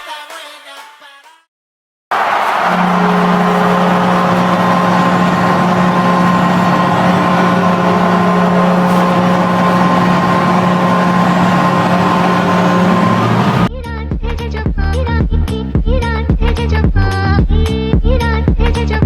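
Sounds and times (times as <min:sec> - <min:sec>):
goal horn low note: 0:02.1 - 0:13.7
loud noisy wash: 0:02.1 - 0:13.7.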